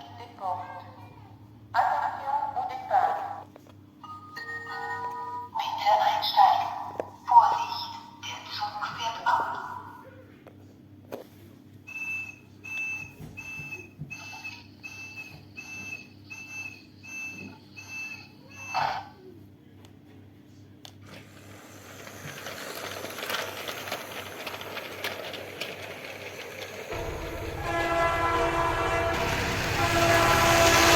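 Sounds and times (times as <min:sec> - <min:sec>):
train approaching: 0:21.3 - 0:30.9.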